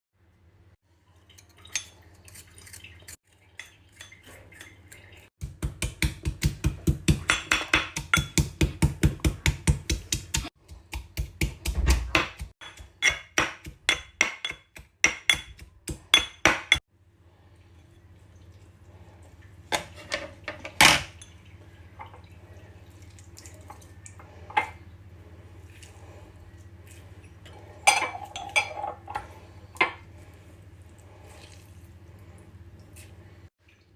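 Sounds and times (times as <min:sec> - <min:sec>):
utensils clinking: 0:27.8 - 0:29.9.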